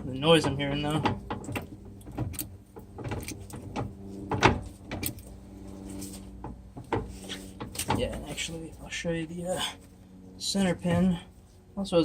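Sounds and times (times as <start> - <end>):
differential clicking and clunking: 0.0 - 8.5.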